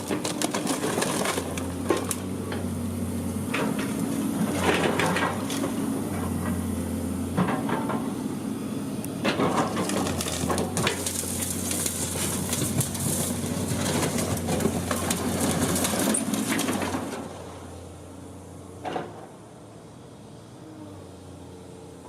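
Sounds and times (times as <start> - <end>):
debris crunching and breaking: 0.0 - 2.3, 9.3 - 17.4
heavy machine engine running: 0.0 - 22.0.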